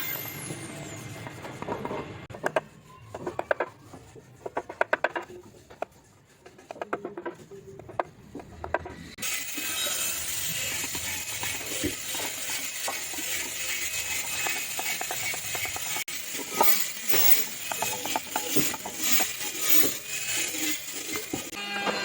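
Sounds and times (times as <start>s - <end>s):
chisels scraping and knocking wood: 0.5s - 21.6s.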